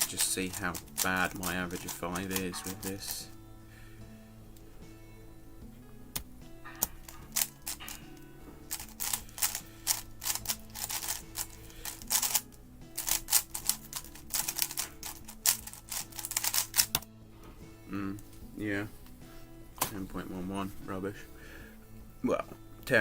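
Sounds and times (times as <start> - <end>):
puzzle cube plastic clacking: 0.0 - 3.4, 6.1 - 17.1.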